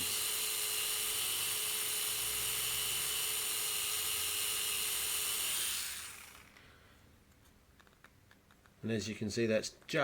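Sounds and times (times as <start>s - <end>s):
small electric motor whining: 0.0s - 6.6s.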